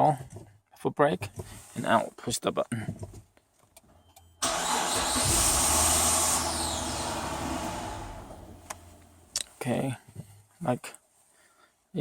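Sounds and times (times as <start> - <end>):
car engine starting and stalling: 4.4 - 9.4.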